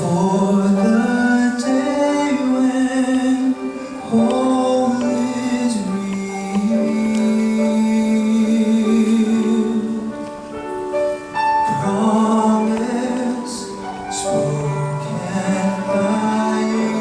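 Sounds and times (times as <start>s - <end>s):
choir singing gospel music: 11.7s - 17.0s.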